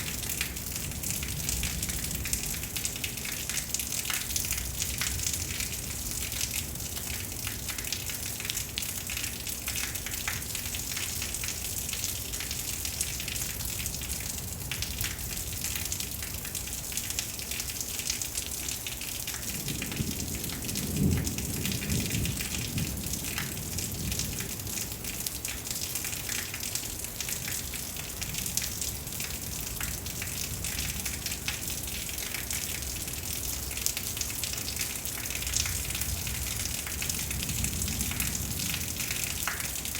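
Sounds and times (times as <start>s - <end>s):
heavy rain: 0.0s - 39.9s
thunder rumble: 19.7s - 24.6s.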